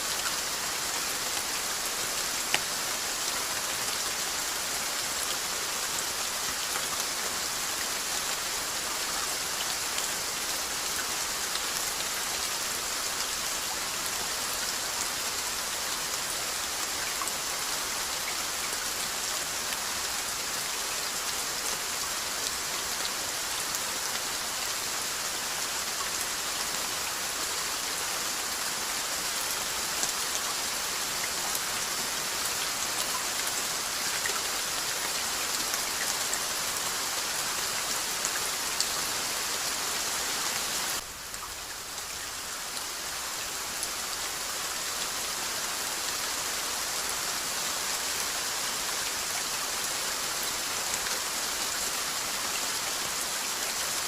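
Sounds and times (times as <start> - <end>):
steady rain hiss: 0.0 - 54.0.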